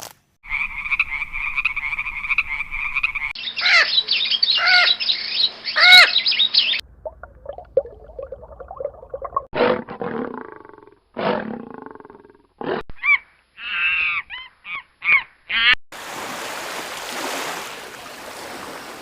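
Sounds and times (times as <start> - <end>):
large animal roaring: 9.6 - 12.8.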